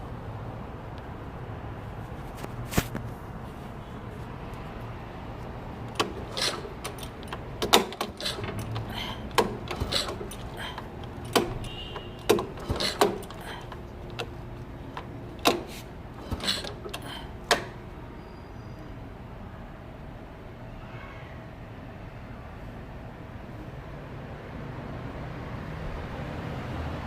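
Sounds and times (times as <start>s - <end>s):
sharp metallic clicks and knocks: 5.4s - 17.9s.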